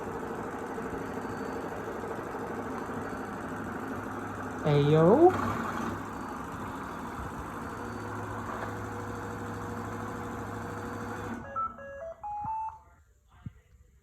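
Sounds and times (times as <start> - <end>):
electronic beeps chime: 11.4 - 12.8.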